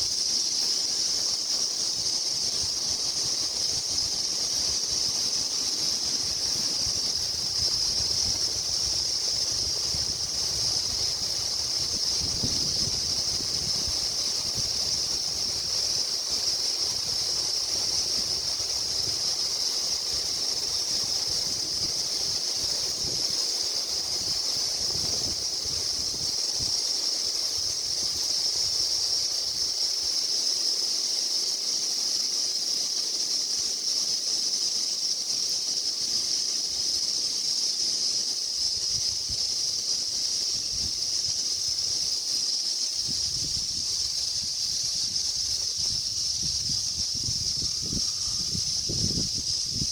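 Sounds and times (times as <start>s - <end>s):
cicadas droning: 0.0s - 49.9s
low wind rumble on microphone: 1.9s - 26.9s, 38.6s - 42.2s, 42.9s - 49.9s.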